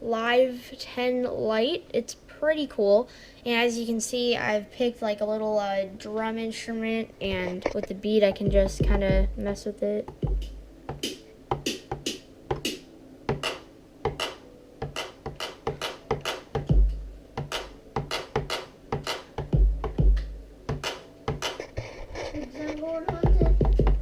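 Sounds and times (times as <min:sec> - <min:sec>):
deep kick drum hits: 0:08.4 - 0:09.4, 0:10.1 - 0:10.6, 0:16.6 - 0:17.0, 0:19.5 - 0:20.8, 0:23.2 - 0:24.0
electronic cymbal and snare hits: 0:10.1 - 0:21.6.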